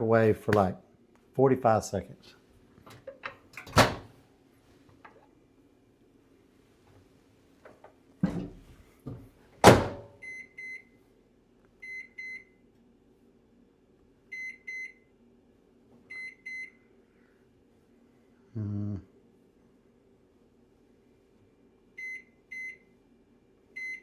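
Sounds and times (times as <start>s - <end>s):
microwave door thump: 3.6s - 4.1s, 9.6s - 10.1s.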